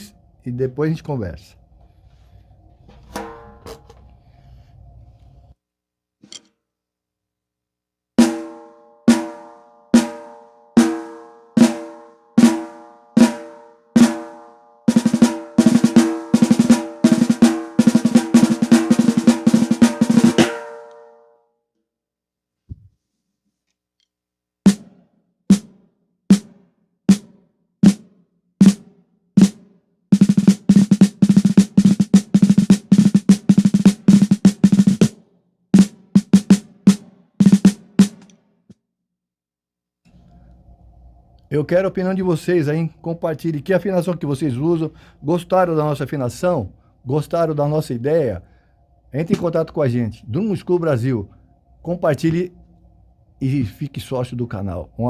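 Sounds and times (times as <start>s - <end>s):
snare drum fast roll: 14.9s - 20.9s, 26.3s - 26.5s, 27.1s - 28.8s, 29.4s - 29.6s, 30.2s - 35.2s, 35.8s - 38.3s
snare drum single strokes: 14.9s - 21.0s, 27.1s - 28.8s, 30.2s - 35.2s, 35.8s - 38.4s.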